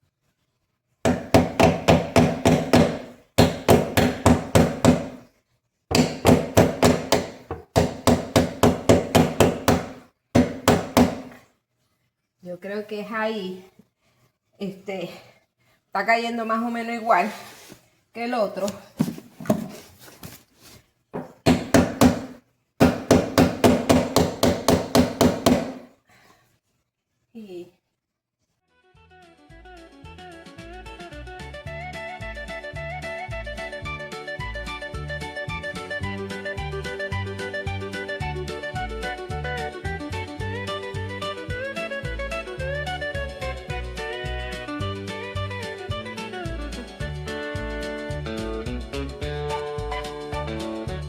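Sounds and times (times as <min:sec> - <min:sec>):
hammer tapping on metal: 0:01.1 - 0:05.2, 0:05.9 - 0:11.4, 0:21.2 - 0:25.8.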